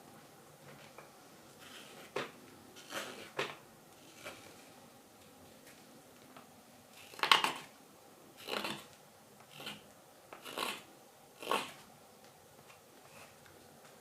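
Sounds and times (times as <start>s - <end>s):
knife shaving wood: 8.4s - 9.8s, 10.4s - 11.8s.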